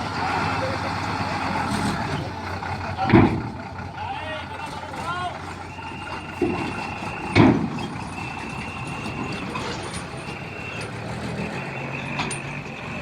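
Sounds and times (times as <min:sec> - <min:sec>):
truck reversing alarm beeps: 0:00.0 - 0:13.0
vehicles idling: 0:00.0 - 0:13.0
loud thump: 0:03.1 - 0:03.6, 0:06.4 - 0:07.8.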